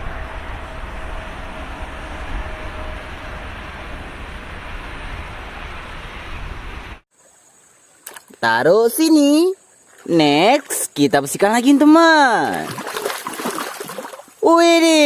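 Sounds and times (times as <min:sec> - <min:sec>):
jet engine roaring: 0:00.0 - 0:07.0.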